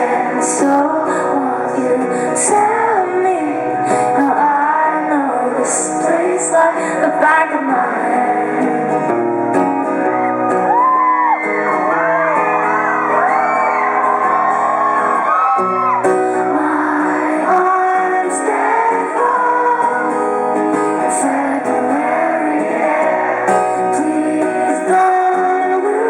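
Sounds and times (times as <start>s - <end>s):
woman singing: 0.0s - 8.9s, 16.2s - 26.0s
audience singing along: 0.0s - 9.9s, 16.5s - 26.0s
acoustic guitar: 0.0s - 26.0s
audience whooping: 9.6s - 16.2s.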